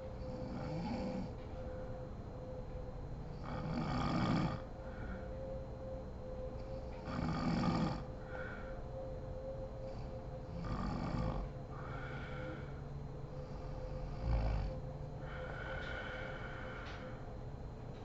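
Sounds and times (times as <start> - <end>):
woman snoring: 0.2 - 1.3, 3.4 - 4.6, 7.1 - 8.5, 10.5 - 12.8, 14.0 - 17.0
soft breaths: 3.5 - 5.7, 6.6 - 9.0, 9.8 - 18.0.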